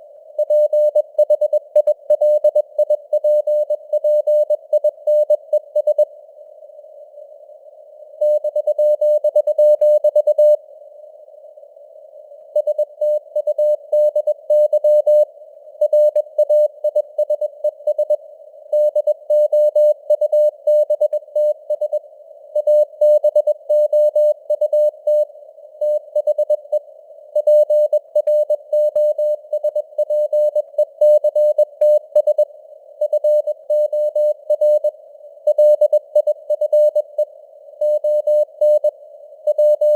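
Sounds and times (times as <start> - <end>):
morse code beeps: 8.2 - 10.6, 27.4 - 32.4, 39.5 - 39.9.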